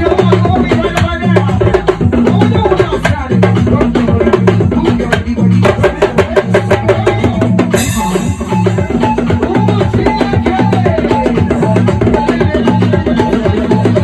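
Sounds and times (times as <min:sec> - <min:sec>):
drum kit playing: 0:00.0 - 0:14.0
crash cymbal: 0:07.8 - 0:09.0.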